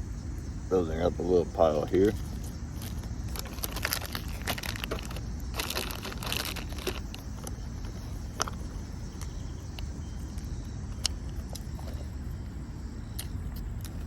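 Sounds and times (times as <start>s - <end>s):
chicken being pulled apart crunching: 2.4s - 7.6s.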